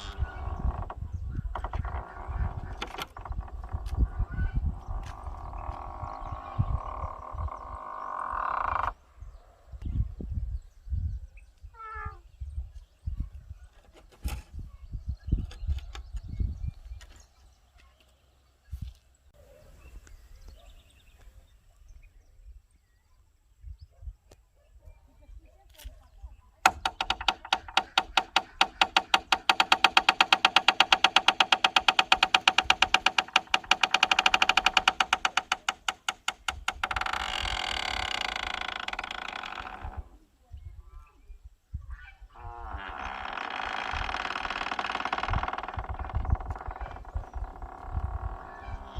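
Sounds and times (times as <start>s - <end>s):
gate hinge creaking: 0.0s - 4.2s, 26.7s - 40.2s, 42.4s - 48.9s
gate clacking: 26.7s - 40.0s.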